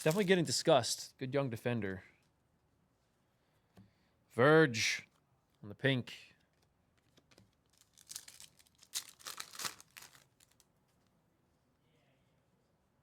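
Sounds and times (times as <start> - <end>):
trading cards and wrapper rustling: 0.0 - 0.7, 7.0 - 10.7.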